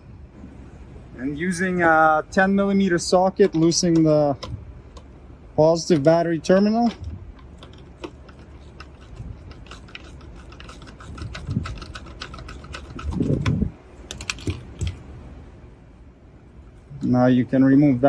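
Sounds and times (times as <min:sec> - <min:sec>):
socket ratchet clicking: 0:03.4 - 0:05.1, 0:05.9 - 0:15.0.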